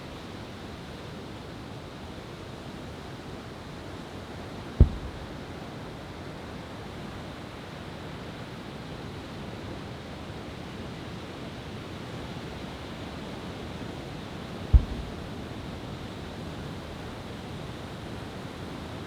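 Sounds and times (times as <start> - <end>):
steady rushing noise: 4.8 - 5.3, 14.8 - 15.3
firework boom: 4.8 - 5.5, 14.8 - 15.7.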